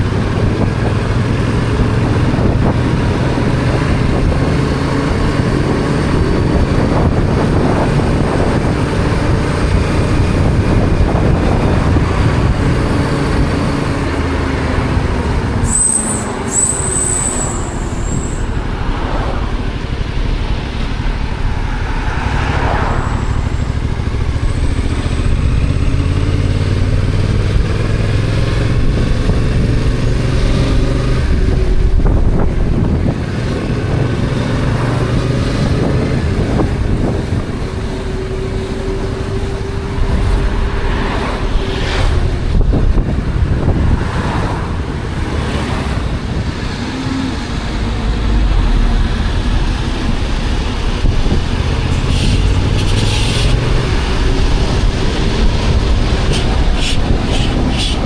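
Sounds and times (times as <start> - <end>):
short high-pitched squeal: 15.6 - 18.6
motorcycle engine running: 23.3 - 29.7.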